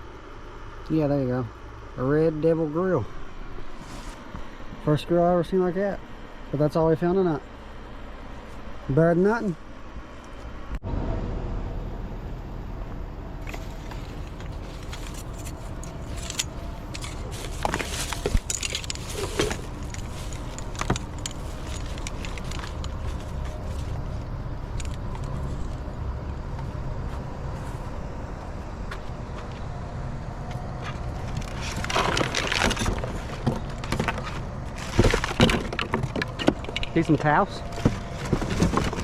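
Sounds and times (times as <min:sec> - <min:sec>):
truck engine and road noise: 0:00.0 - 0:39.0
clicks and rattles: 0:14.6 - 0:24.0, 0:31.2 - 0:39.0.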